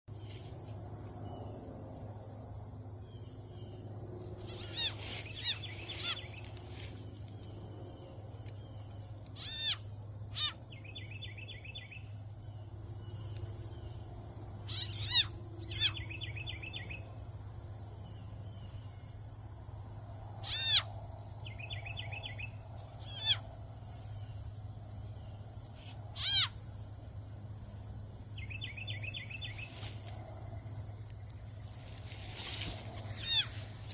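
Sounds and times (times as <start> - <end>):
animal calling in rising-falling notes: 4.5 - 6.2.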